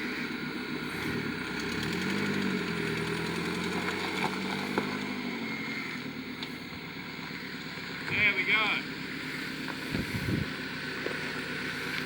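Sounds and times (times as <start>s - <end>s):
car engine revving under load: 0.4s - 8.1s.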